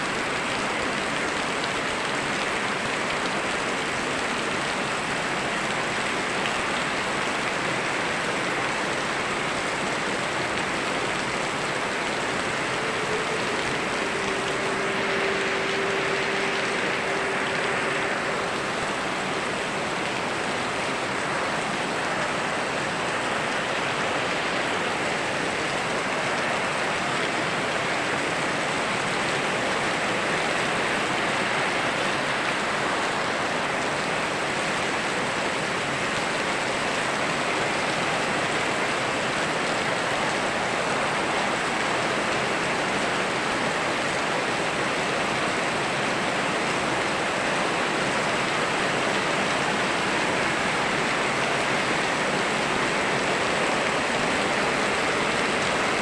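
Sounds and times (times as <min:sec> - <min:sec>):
rainfall: 0:00.0 - 0:56.0
river water rushing: 0:00.0 - 0:56.0.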